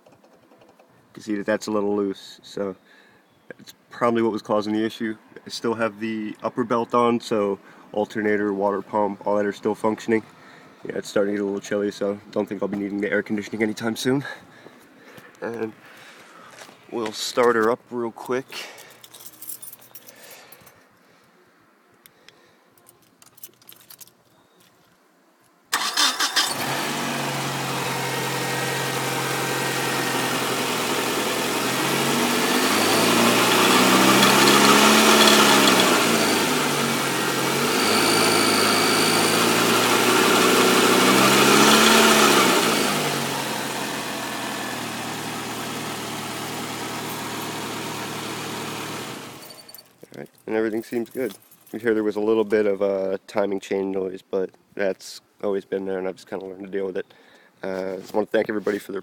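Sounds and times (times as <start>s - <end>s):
car engine starting and revving: 25.7s - 49.5s.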